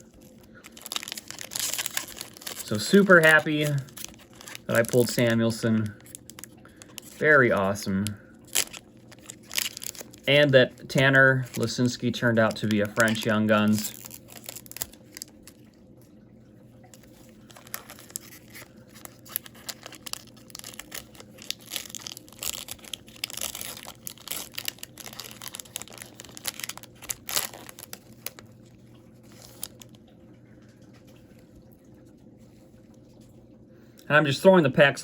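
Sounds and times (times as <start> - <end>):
card pack wrapper tearing: 0.2 - 15.5, 17.1 - 28.4, 29.2 - 29.9.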